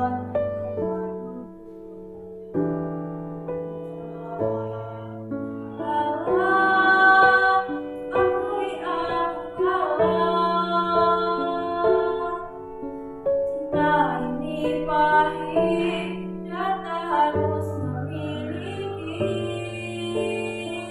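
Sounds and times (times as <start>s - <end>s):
slow piano accompaniment: 0.0s - 20.9s
young female voice singing: 5.8s - 12.6s, 13.6s - 20.9s.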